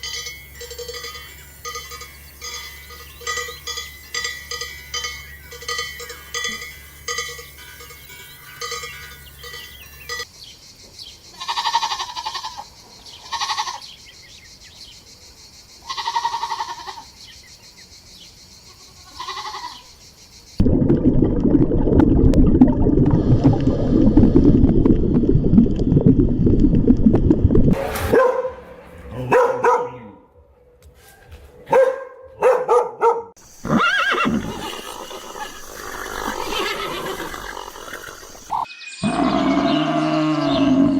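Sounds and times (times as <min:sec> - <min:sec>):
rhythmic bell ringing: 0:00.0 - 0:10.3
livestock bleating: 0:11.4 - 0:12.6, 0:13.2 - 0:13.9, 0:15.8 - 0:17.1, 0:18.7 - 0:19.9.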